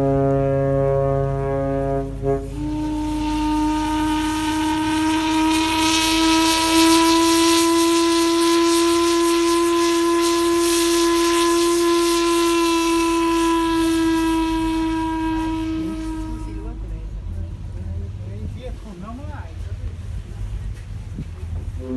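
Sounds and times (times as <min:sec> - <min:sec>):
steam whistle long blast: 0:00.0 - 0:16.8.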